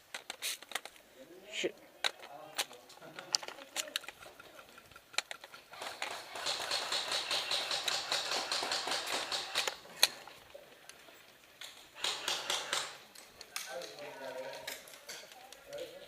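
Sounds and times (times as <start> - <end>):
airsoft guns firing bursts: 5.6 - 9.9, 12.0 - 13.2.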